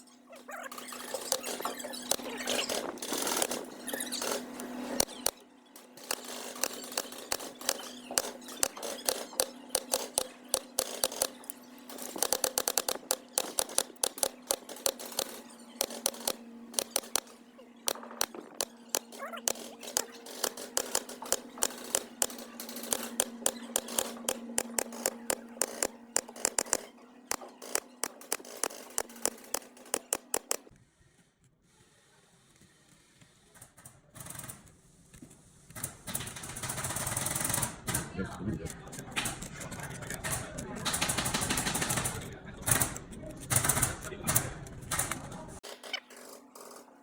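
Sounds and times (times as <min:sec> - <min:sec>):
steady low hum: 0:00.0 - 0:30.7
rattan clicking and crackling: 0:00.5 - 0:30.7.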